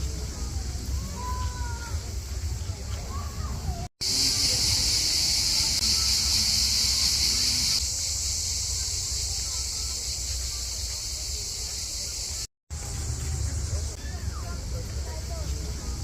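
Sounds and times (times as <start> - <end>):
insects chirping: 4.0 - 12.5.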